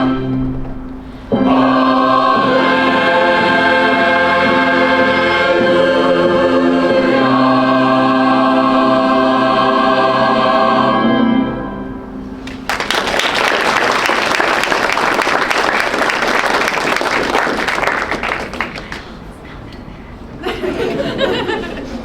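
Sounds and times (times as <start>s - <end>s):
choir holding final chord: 1.3s - 11.9s
audience applause: 12.4s - 19.4s.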